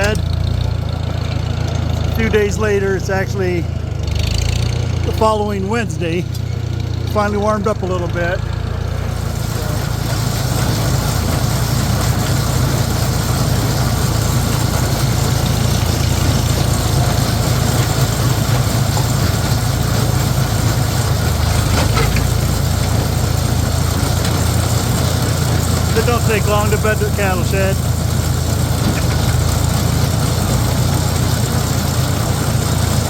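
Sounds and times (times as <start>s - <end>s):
tractor engine running: 0.0s - 33.0s.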